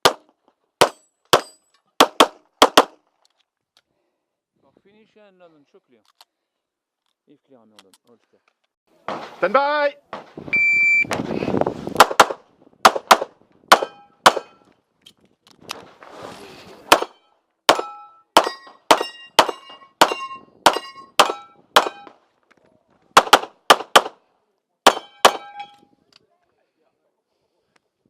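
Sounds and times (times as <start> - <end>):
handgun shots: 12.0 - 14.6, 16.9 - 22.2, 23.2 - 24.2, 24.9 - 25.8
steel targets clanging: 17.8 - 22.2, 24.9 - 25.8.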